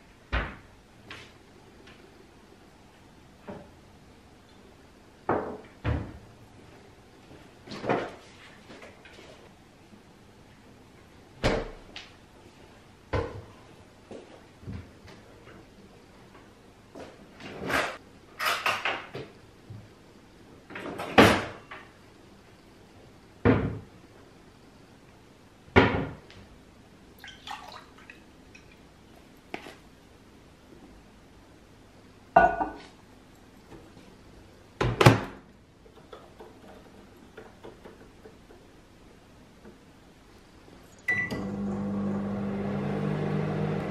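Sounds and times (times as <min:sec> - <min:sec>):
dishes clattering: 0:32.4 - 0:32.9.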